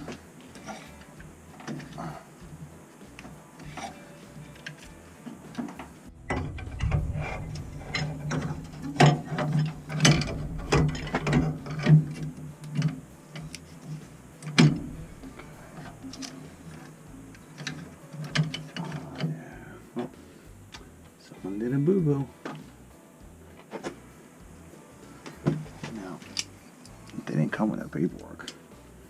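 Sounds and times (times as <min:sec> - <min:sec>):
steady low hum: 0:00.0 - 0:29.0
metallic clicks and clanks of tools: 0:05.5 - 0:19.4.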